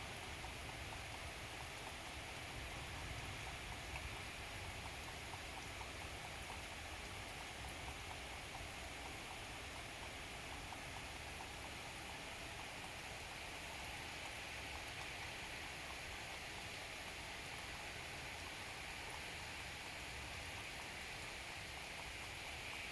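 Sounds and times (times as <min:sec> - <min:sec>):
steady rain hiss: 0:00.0 - 0:22.9.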